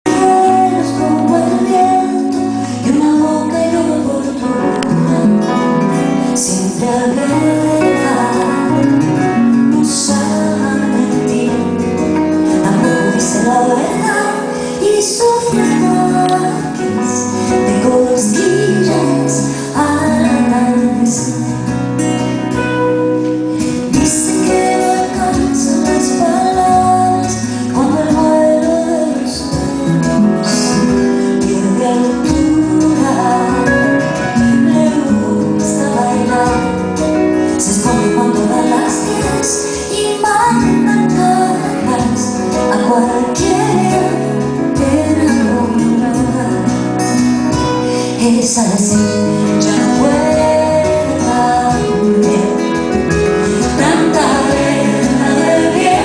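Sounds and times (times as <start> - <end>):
guitar: 0.0 - 56.0
woman singing: 0.0 - 56.0
bass line: 49.0 - 56.0.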